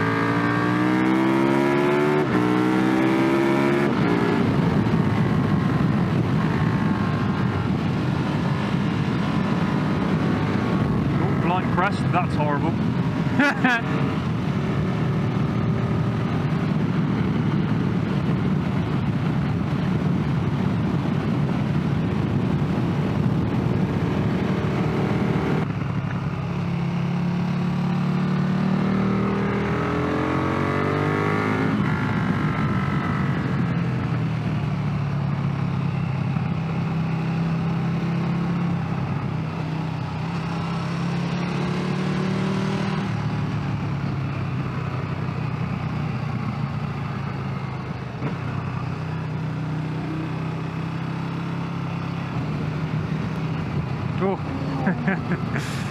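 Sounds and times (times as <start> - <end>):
motorcycle engine running: 0.0 - 28.5, 31.5 - 55.9
wind rush: 3.6 - 25.7, 55.2 - 55.9.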